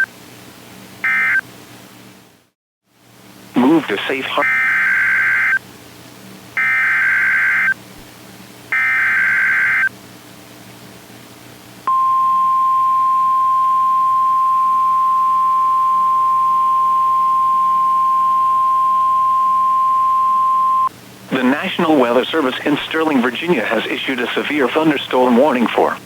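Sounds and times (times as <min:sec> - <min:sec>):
warning alarm tone: 0:06.6 - 0:07.7, 0:08.8 - 0:09.9, 0:11.9 - 0:20.9.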